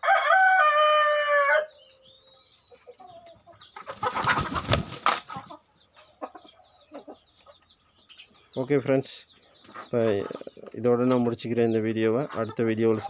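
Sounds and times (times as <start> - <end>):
rooster crowing: 0.0 - 1.8
birds chirping faintly: 0.0 - 13.0
chickens scuffling or flapping: 3.8 - 5.6.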